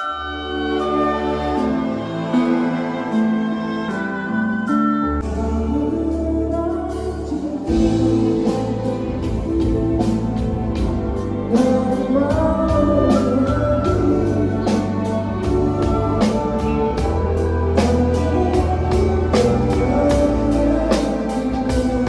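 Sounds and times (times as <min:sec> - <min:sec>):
bass line: 0:05.1 - 0:22.0
rock band with drums: 0:05.2 - 0:22.0.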